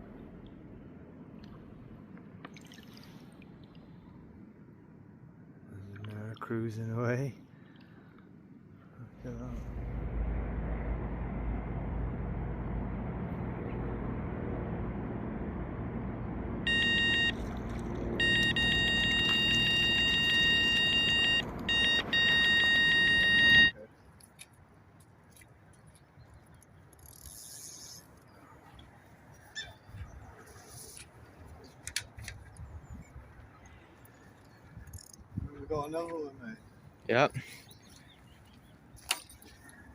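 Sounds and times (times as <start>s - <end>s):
low rumble: 9.2s - 18.9s.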